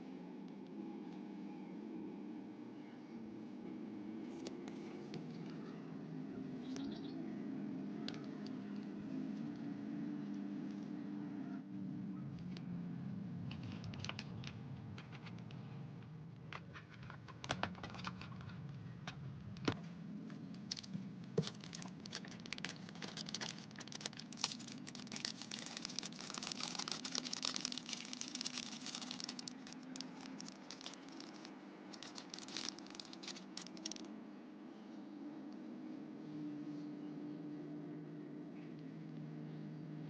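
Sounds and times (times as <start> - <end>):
packaging crinkling and tearing: 20.6 - 34.1.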